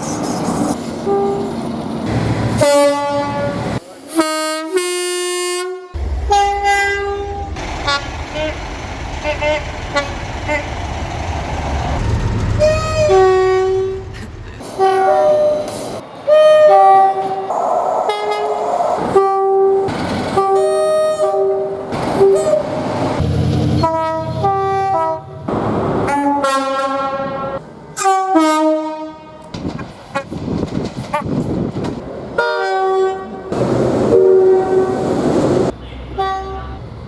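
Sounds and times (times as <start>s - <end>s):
train horn blasts: 1.0s - 1.6s, 2.5s - 8.6s, 9.2s - 10.7s, 14.8s - 15.7s, 16.3s - 17.5s, 18.1s - 22.8s, 23.8s - 25.4s, 26.1s - 29.5s, 32.4s - 33.5s, 34.1s - 35.0s, 35.8s - 36.8s
low rumble: 6.0s - 14.6s.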